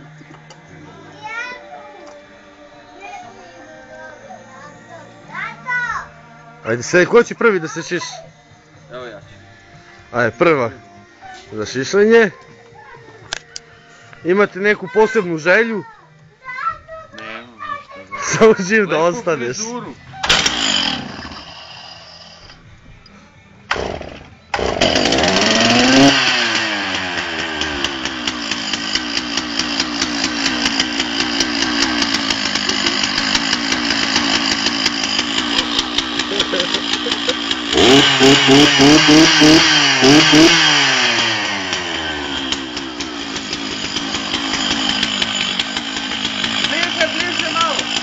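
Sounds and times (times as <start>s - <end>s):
chainsaw engine running and revving: 20.2s - 22.5s, 23.7s - 48.0s
chainsaw starter pulls: 20.2s - 22.6s, 23.7s - 48.0s.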